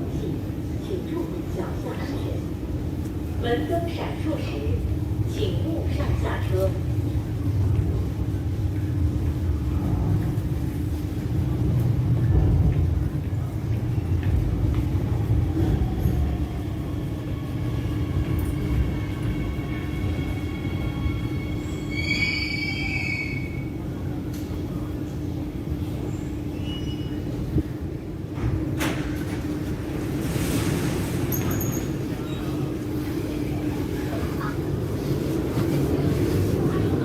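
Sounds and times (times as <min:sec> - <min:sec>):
electric train rumbling: 0:00.0 - 0:37.0
wheels squealing on rails: 0:17.6 - 0:23.8, 0:26.0 - 0:27.4.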